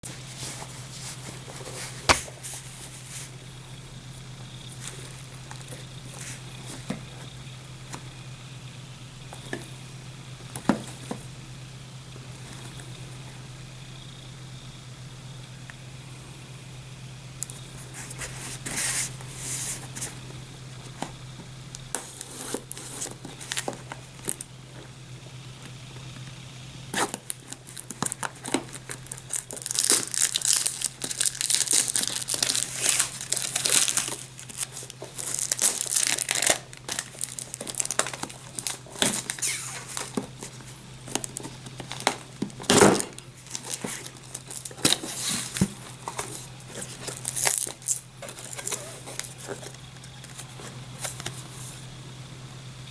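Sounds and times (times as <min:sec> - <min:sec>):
steady low hum: 0:00.0 - 0:52.9
plastic wrapping crinkling: 0:21.7 - 0:24.5, 0:27.0 - 0:51.7.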